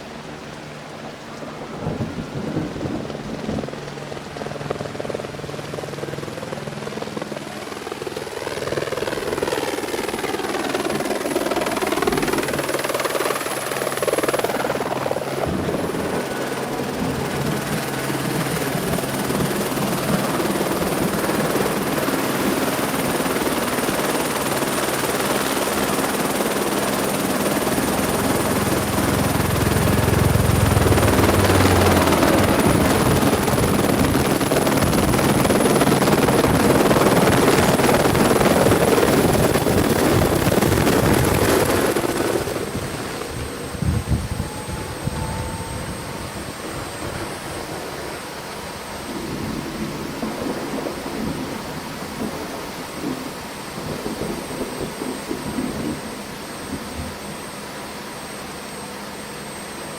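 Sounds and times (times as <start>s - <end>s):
helicopter rotor and turbine whine: 0.0s - 59.9s.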